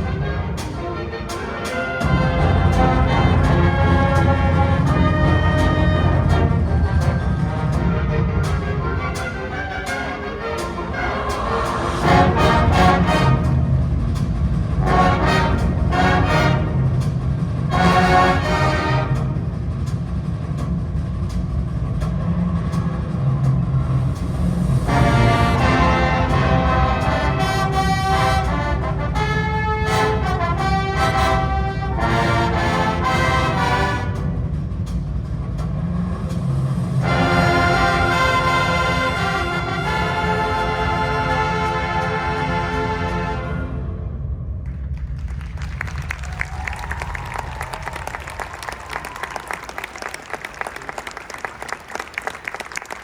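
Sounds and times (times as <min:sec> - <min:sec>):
brass and woodwinds playing chords: 0:00.0 - 0:19.9, 0:24.8 - 0:34.7, 0:37.0 - 0:44.4
low music: 0:00.0 - 0:49.8
audience applauding: 0:44.8 - 0:53.0.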